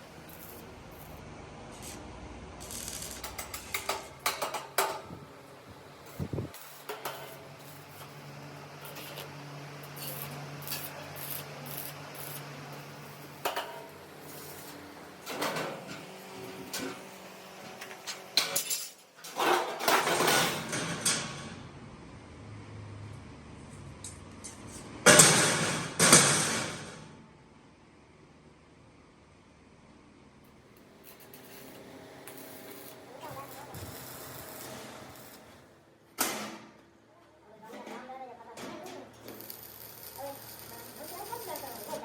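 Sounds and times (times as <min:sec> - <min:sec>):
metal tools clanking and scraping: 0:18.1 - 0:21.2.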